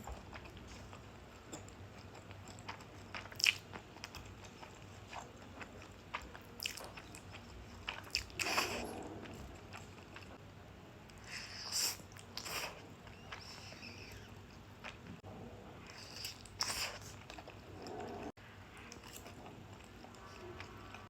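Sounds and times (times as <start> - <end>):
wet chewing clicks: 0.1 - 10.4.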